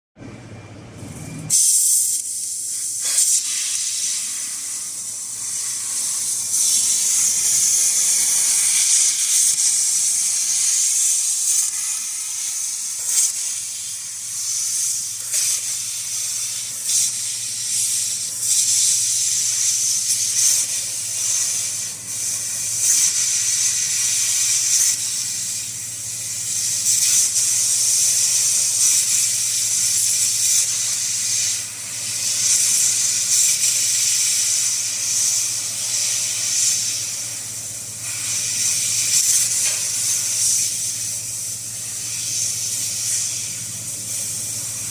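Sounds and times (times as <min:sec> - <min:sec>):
low machine hum: 0:00.2 - 0:01.5
laser cutter gas hissing: 0:01.5 - 0:44.9.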